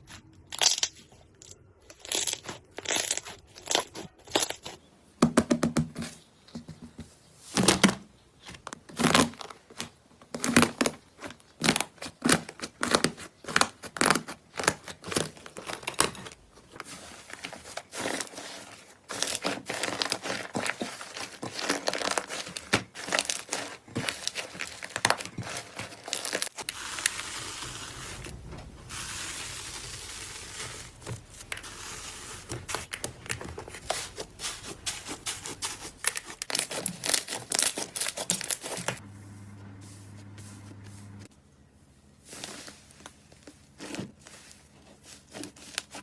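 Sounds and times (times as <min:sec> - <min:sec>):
slime crackling and popping: 0:19.1 - 0:39.0
slime hissing: 0:26.6 - 0:38.8.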